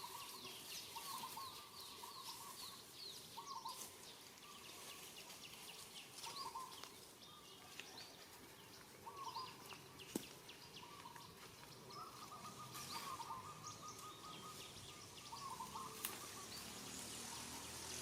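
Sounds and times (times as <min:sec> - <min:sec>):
warbled bird call: 0:00.0 - 0:02.8, 0:09.0 - 0:09.6, 0:11.9 - 0:18.0
birds chirping: 0:00.0 - 0:18.0.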